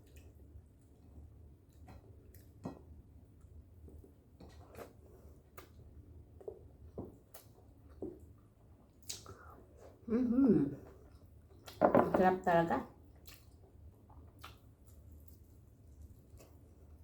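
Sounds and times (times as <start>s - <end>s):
chewing and lip smacks: 13.2s - 16.7s.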